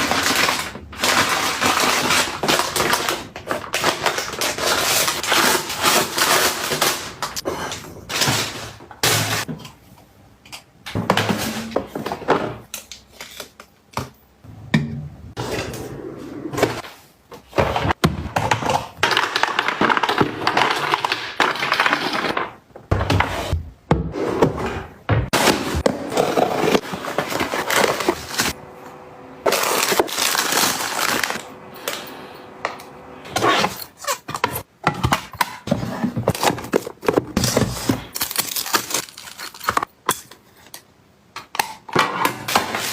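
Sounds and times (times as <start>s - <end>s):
packaging rustling: 25.4s - 28.6s, 29.5s - 31.4s, 36.3s - 39.9s.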